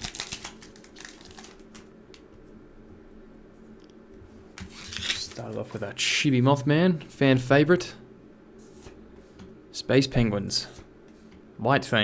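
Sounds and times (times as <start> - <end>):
foil pack and cards rustling: 0.0 - 1.9, 4.6 - 5.9.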